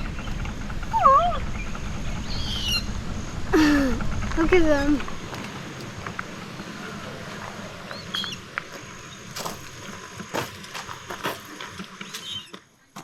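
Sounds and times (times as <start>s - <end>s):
steady low hum: 0.0s - 12.1s.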